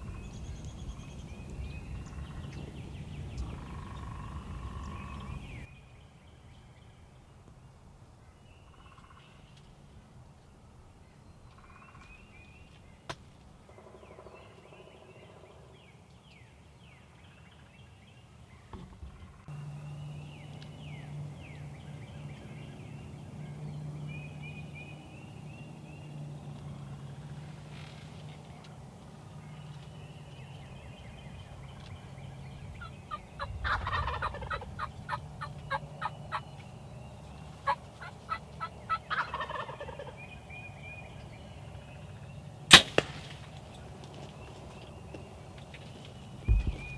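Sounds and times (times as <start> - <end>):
songbirds chirping: 0.0 - 46.9
turkey gobbling: 32.8 - 36.5, 37.6 - 40.2.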